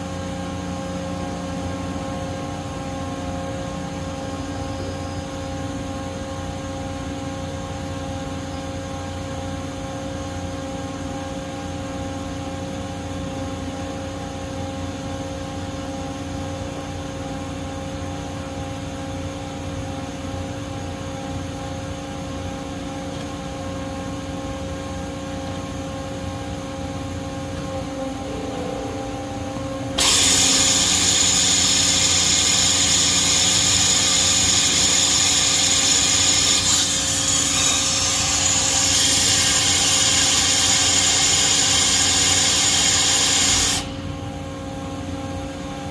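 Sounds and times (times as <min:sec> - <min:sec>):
machine humming: 0:23.5 - 0:45.9
fixed machine tones: 0:27.5 - 0:31.2
loud hiss with high whine: 0:29.1 - 0:44.6.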